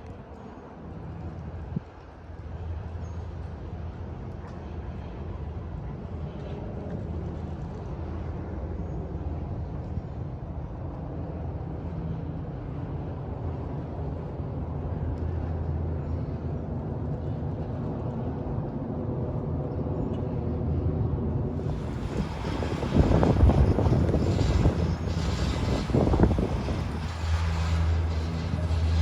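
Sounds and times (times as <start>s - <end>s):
gondola rumble and hum: 0.0s - 29.0s
bright wind-like rush: 21.5s - 29.0s.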